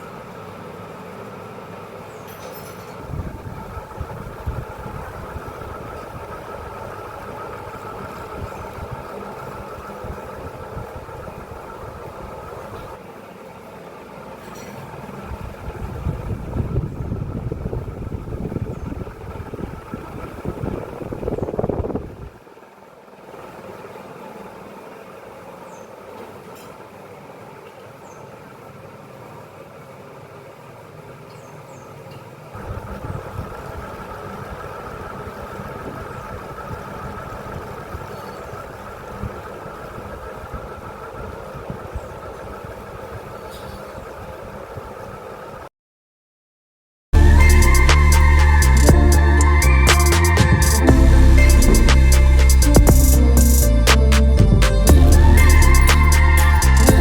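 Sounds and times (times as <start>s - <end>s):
ceiling fan humming: 0.0s - 45.7s, 47.2s - 57.0s
uneven low rumble: 47.2s - 57.0s.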